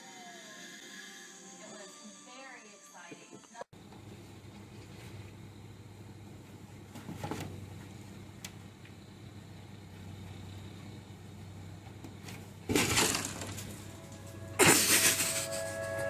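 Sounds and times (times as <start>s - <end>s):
crash of something breaking: 12.7s - 14.0s.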